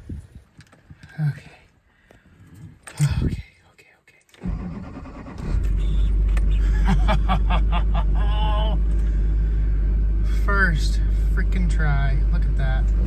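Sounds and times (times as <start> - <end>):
engine starter cranking: 4.4 - 6.6
diesel engine idling: 4.4 - 13.0.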